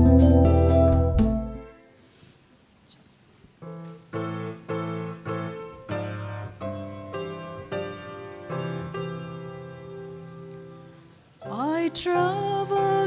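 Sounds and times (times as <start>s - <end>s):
keyboard playing chords: 0.0s - 1.8s.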